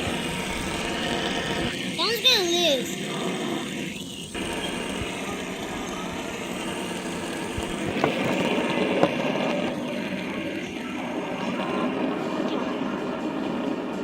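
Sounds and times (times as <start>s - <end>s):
fidget spinners whirring: 0.0s - 14.0s.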